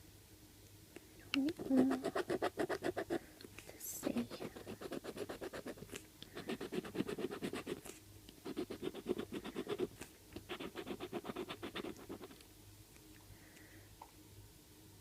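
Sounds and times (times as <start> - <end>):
scratching a scratchcard: 1.6 - 3.2, 4.0 - 12.4.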